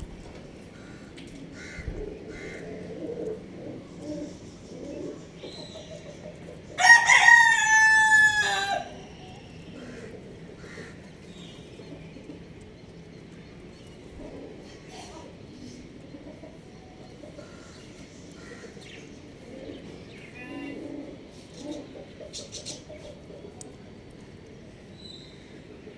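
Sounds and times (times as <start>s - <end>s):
rooster crowing: 6.8s - 9.0s.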